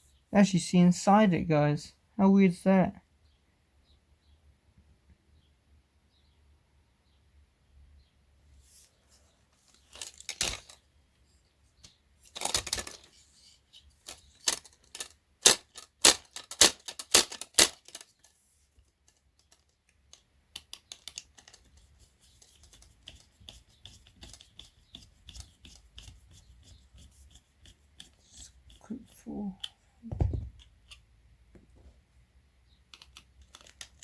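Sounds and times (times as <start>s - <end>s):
plastic and metal parts clicking: 9.7s - 10.8s, 11.8s - 13.1s, 14.0s - 23.3s, 29.6s - 31.1s, 32.9s - 34.0s.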